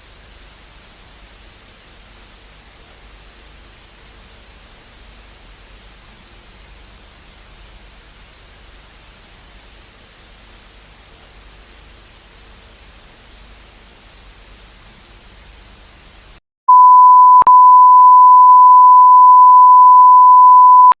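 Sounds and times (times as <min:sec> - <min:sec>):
static hiss: 0:00.0 - 0:16.4
electronic beep tone: 0:16.7 - 0:21.0.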